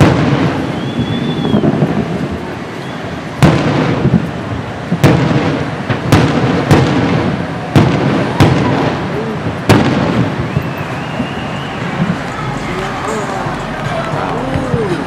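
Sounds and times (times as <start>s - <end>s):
fireworks booming: 0.0s - 15.0s
low rolling rumble: 0.0s - 15.0s.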